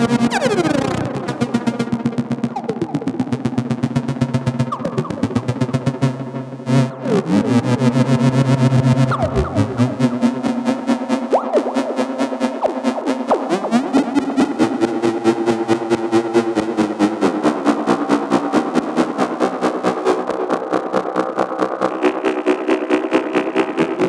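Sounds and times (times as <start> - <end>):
pulsing synthesizer drone: 0.0 - 24.0
echoing pitch glides: 4.7 - 16.0.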